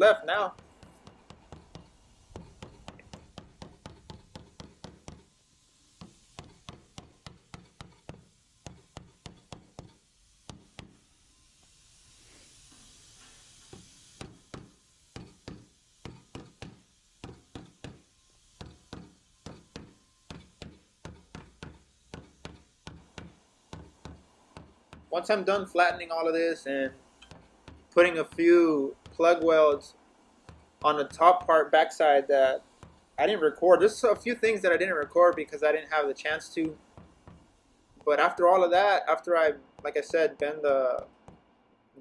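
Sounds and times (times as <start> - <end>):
hammer tapping steel: 0.0 - 5.3, 6.0 - 11.0, 13.7 - 26.0, 26.9 - 31.7, 32.6 - 35.6.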